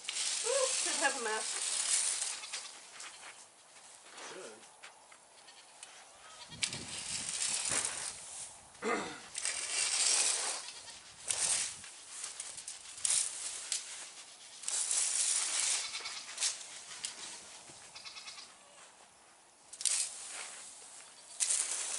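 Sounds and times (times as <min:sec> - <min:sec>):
hissing rustling noise: 0:00.0 - 0:04.6, 0:05.8 - 0:08.7, 0:09.3 - 0:19.0, 0:19.7 - 0:21.9
goat bleating: 0:02.2 - 0:02.8, 0:05.4 - 0:06.6, 0:10.5 - 0:11.0, 0:15.8 - 0:16.3, 0:17.2 - 0:18.8.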